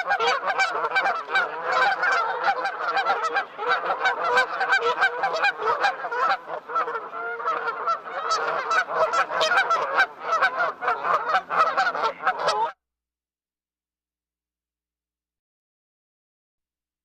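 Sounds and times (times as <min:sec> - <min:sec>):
flock of birds calling: 0:00.0 - 0:12.7.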